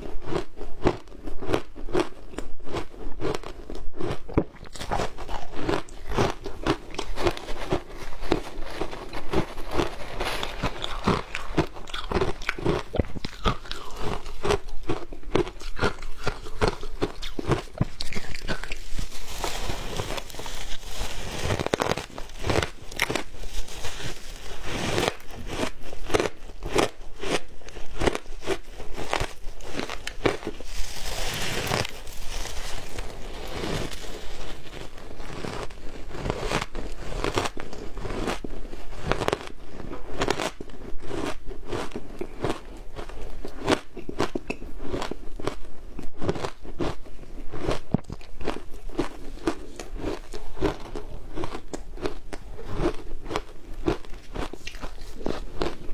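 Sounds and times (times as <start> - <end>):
shaved ice crunching: 4.8 - 27.4, 28.0 - 36.4.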